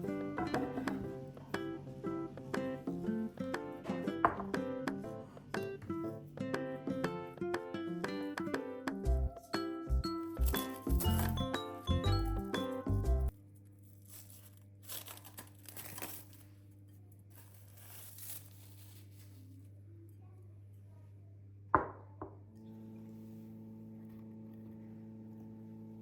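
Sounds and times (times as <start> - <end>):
wrapping rustling and tearing: 13.4 - 19.6.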